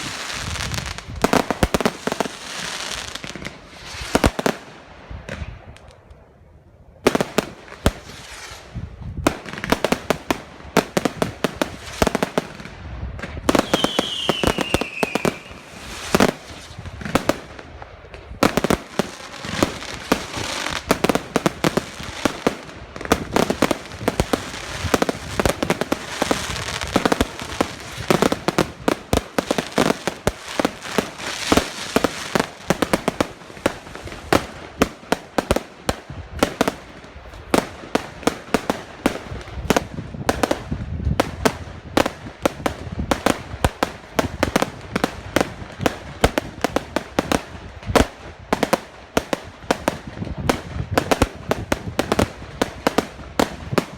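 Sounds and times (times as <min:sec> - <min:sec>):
fireworks banging: 0:07.1 - 0:53.9
falling firework whistle: 0:13.4 - 0:16.8.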